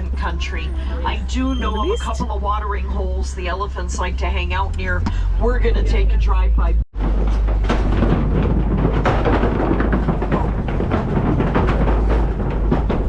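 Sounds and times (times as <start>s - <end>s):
truck rumbling on rough track: 0.0s - 13.0s
knocks and rattles: 7.0s - 13.0s.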